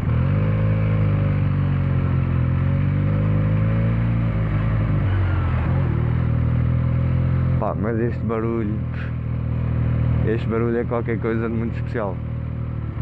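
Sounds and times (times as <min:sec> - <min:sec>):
motorcycle engine and exhaust: 0:00.0 - 0:13.0.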